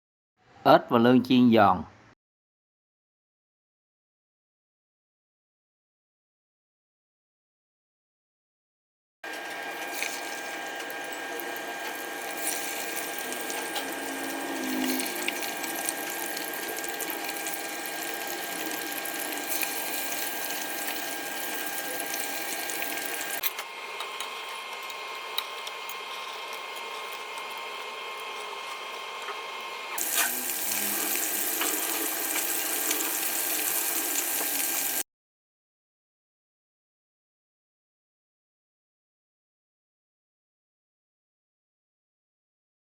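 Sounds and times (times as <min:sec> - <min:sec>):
food deep-frying in hot oil: 0:09.3 - 0:29.1, 0:29.9 - 0:35.0.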